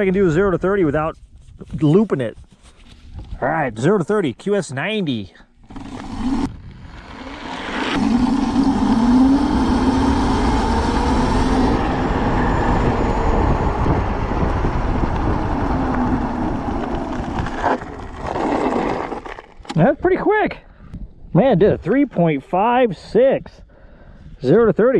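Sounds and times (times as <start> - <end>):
electric motor whining: 5.6 - 18.8
wind noise rushing: 5.7 - 19.0.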